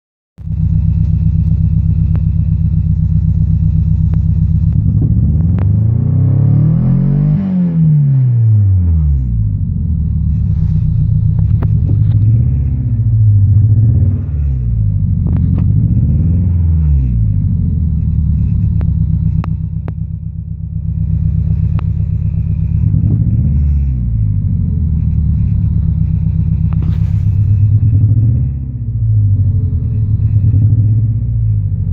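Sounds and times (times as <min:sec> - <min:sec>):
sharp engine ticks: 0:00.4 - 0:05.8, 0:18.0 - 0:23.6
car engine revving unevenly: 0:03.3 - 0:31.9.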